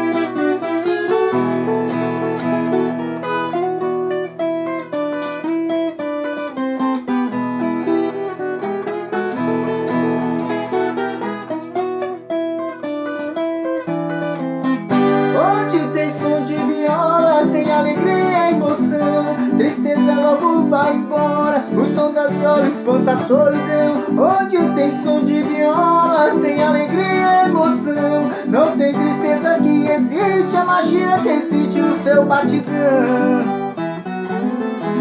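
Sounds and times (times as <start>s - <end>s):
plucked strings instrumental: 0.0s - 35.0s
person singing: 15.1s - 35.0s.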